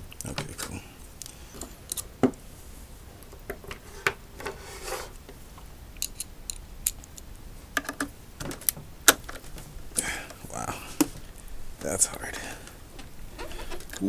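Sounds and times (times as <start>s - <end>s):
short scrape: 3.8s - 5.2s.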